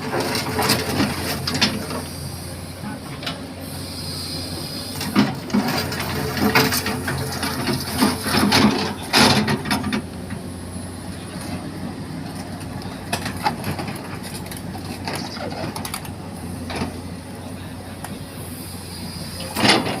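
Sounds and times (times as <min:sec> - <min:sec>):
bucket clanking and scraping: 0:00.0 - 0:02.1, 0:05.0 - 0:10.0
excavator diesel engine running: 0:00.0 - 0:20.0.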